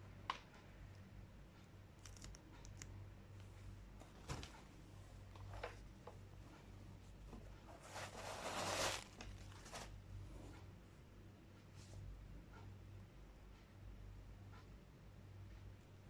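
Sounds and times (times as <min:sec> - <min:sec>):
paper crinkling and tearing: 0:07.8 - 0:09.9.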